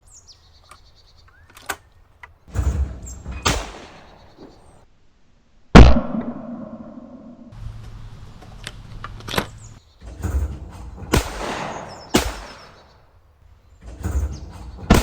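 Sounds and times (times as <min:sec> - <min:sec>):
soft bangs: 0:02.5 - 0:04.8, 0:09.4 - 0:15.0
shotgun firing: 0:03.3 - 0:04.6, 0:05.8 - 0:07.3, 0:11.1 - 0:13.0.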